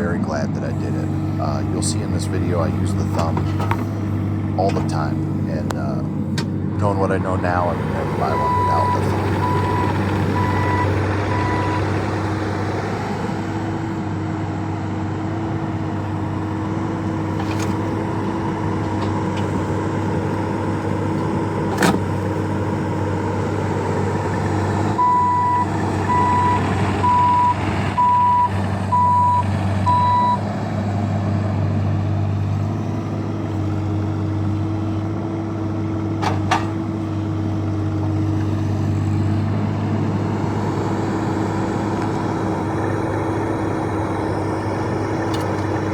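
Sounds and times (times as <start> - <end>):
excavator diesel engine running: 0.0 - 45.9
travel alarm beeps: 8.2 - 11.8, 25.0 - 30.4.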